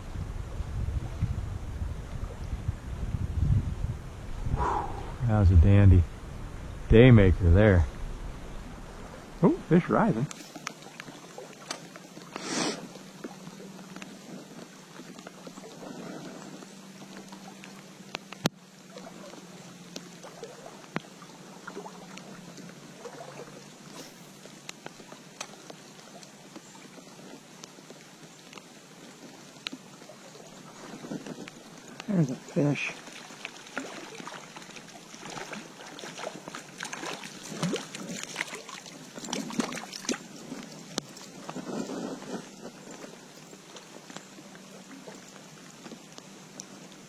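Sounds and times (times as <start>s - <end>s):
stream running: 4.2s - 47.0s
small splashes and gurgles: 18.7s - 27.2s, 29.2s - 41.3s.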